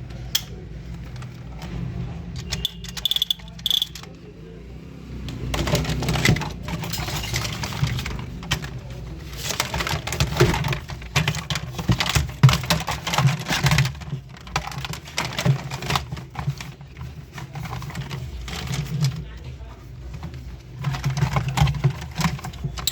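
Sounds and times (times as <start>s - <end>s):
plastic toy gun parts clicking: 0.3s - 0.6s, 2.4s - 4.2s.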